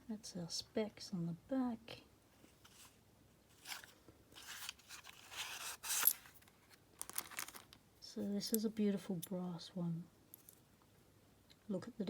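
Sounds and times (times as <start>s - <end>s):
cardboard box rustling and scraping: 2.5s - 6.4s.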